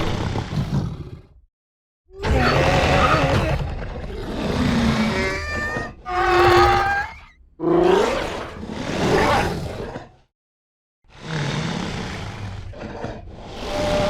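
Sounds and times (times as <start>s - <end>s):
dinosaur roaring and growling: 2.2s - 10.2s, 11.1s - 14.0s.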